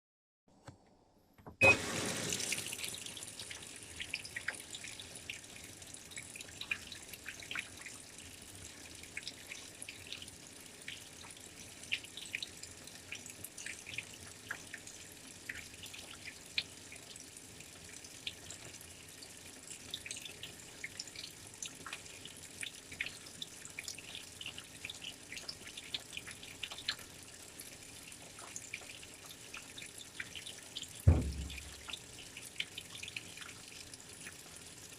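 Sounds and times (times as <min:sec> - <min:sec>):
water rushing into washing machine: 0:01.6 - 0:08.0, 0:28.4 - 0:33.6
water drips and splashes: 0:01.7 - 0:34.9.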